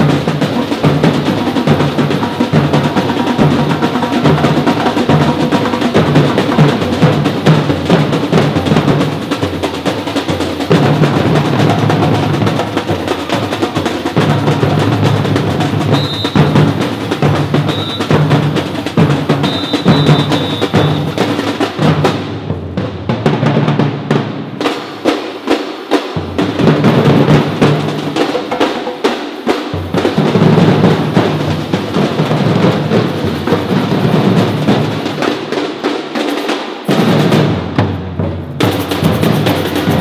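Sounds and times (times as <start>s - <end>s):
bass drums: 0.0s - 25.1s, 26.2s - 29.0s
snare drums: 0.0s - 40.0s.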